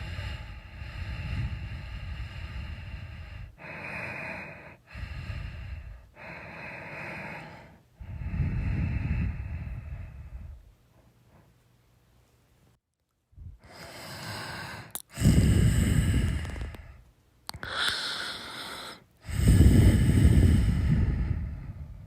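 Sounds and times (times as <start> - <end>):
soft airy breaths: 0.0 - 11.8, 13.4 - 22.0
person snoring: 13.7 - 21.7.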